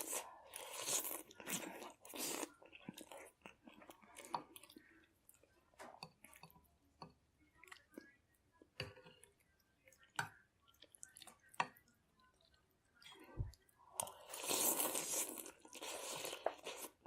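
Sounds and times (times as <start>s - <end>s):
wet chewing sounds: 0.0s - 5.5s.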